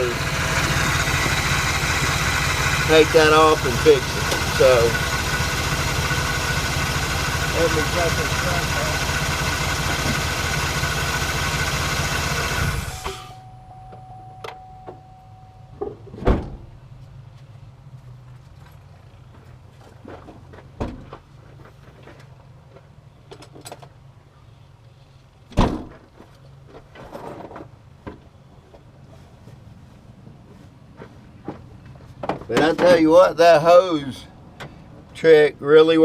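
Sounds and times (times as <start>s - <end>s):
pickup engine running: 0.0s - 23.5s
steady beep: 12.8s - 16.0s
faint low hum: 13.0s - 19.5s.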